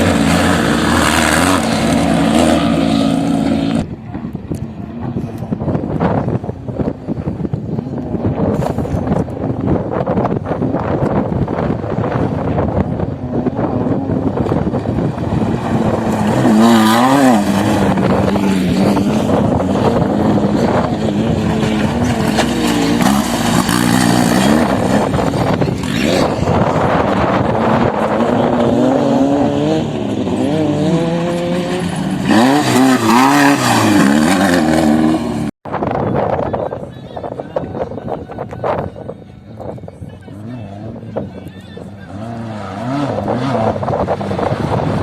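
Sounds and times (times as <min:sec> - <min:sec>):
off-road vehicle engine revving: 0:00.0 - 0:06.2, 0:11.6 - 0:35.6, 0:40.3 - 0:45.0.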